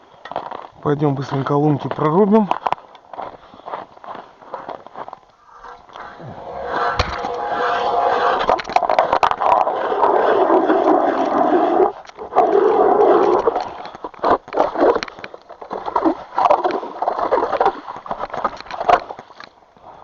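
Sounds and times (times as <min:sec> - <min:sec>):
footsteps crunching through snow: 0:00.0 - 0:07.3.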